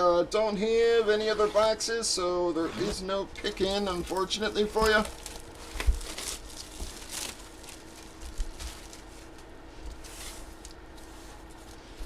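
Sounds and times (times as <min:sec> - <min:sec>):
faint steady hum: 0:00.0 - 0:12.0
paper and plastic wrapping rustling: 0:02.7 - 0:12.0.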